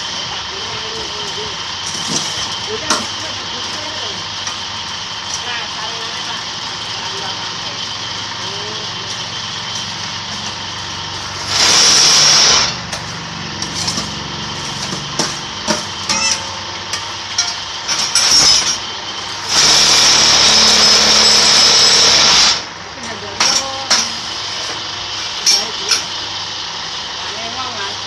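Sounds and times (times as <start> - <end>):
machine motor humming: 0.0 - 23.4
harsh mechanical noise: 0.0 - 28.0
machine clanks: 11.4 - 18.9.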